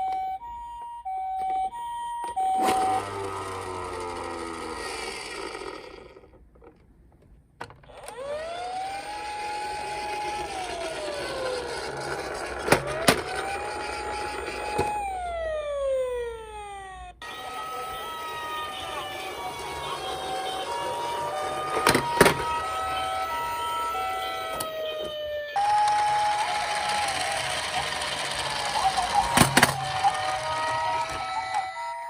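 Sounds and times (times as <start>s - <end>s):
two-tone hi-lo siren: 0.0s - 5.2s, 12.8s - 32.0s
wailing siren: 0.0s - 5.2s, 8.1s - 32.0s.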